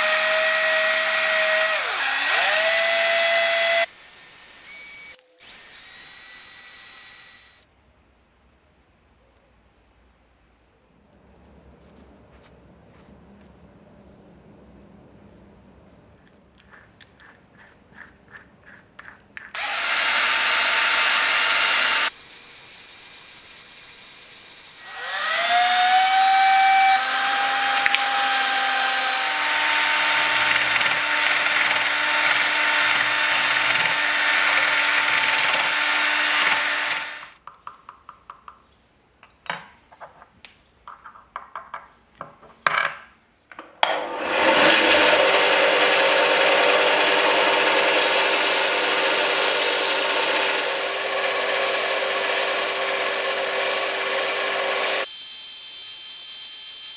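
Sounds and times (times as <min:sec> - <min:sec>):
power tool motor whining: 0:00.0 - 0:07.6, 0:19.6 - 0:37.4, 0:44.0 - 0:56.9.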